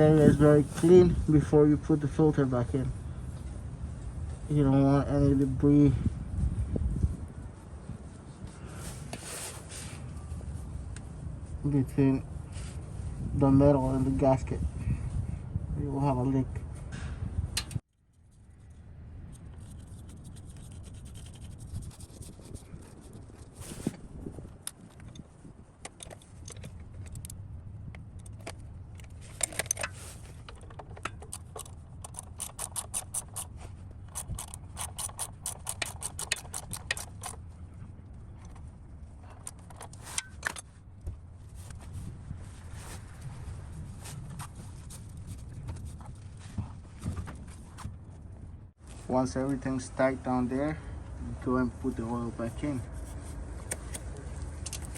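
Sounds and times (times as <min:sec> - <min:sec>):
metal scraping and clinking: 0:28.2 - 0:37.5, 0:38.3 - 0:40.8
ratchet wrench clicking: 0:31.2 - 0:33.5, 0:34.1 - 0:37.4.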